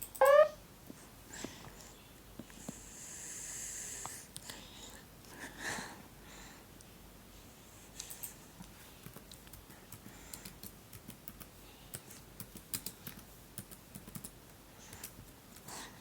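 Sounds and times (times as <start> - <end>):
faint irregular clicking: 8.0 - 15.7.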